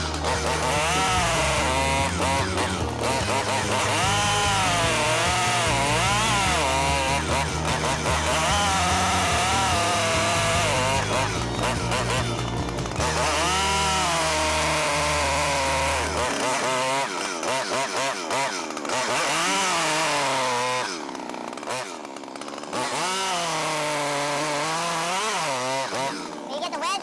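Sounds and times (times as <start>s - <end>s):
chainsaw cutting wood: 0.0s - 27.0s.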